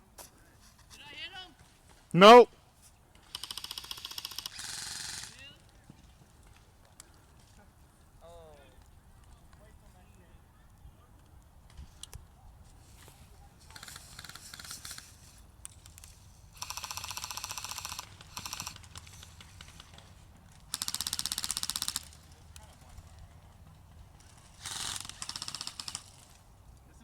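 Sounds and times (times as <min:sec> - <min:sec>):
airsoft guns firing bursts: 0:03.2 - 0:05.4, 0:16.6 - 0:20.0, 0:20.7 - 0:22.4, 0:24.5 - 0:26.4.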